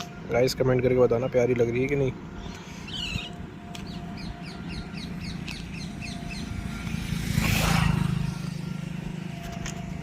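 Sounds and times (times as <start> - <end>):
bird chirping: 2.4 - 6.6.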